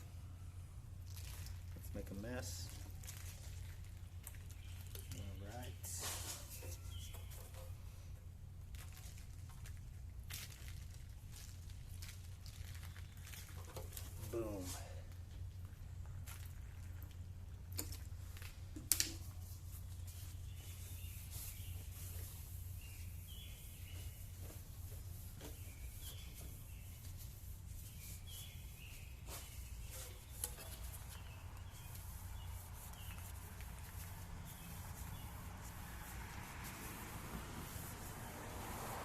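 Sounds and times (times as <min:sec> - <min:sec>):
faint bird chirps: 0:04.5 - 0:08.0.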